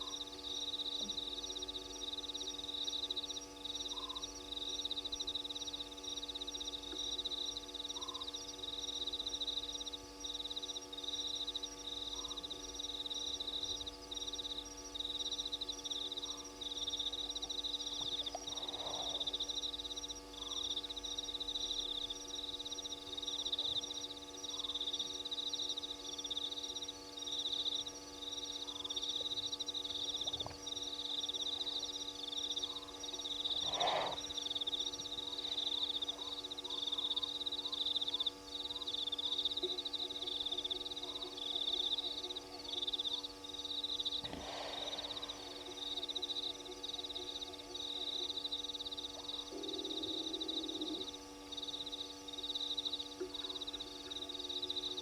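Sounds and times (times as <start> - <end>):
electrical hum: 0.0 - 55.0
loud single animal call: 33.5 - 34.4, 44.2 - 48.4
short lower animal call: 44.2 - 48.4.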